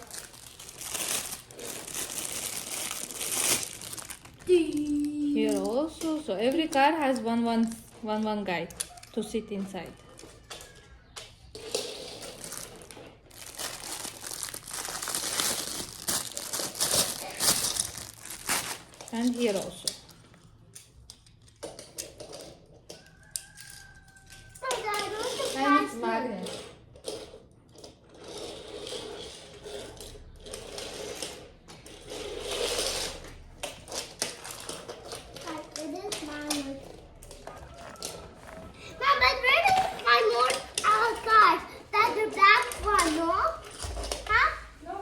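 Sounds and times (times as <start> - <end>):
plastic toy train pieces rattling: 0.0 - 7.9, 10.2 - 38.5, 39.1 - 44.5
plastic packaging crinkling: 0.0 - 10.8, 11.6 - 20.5, 32.4 - 41.4.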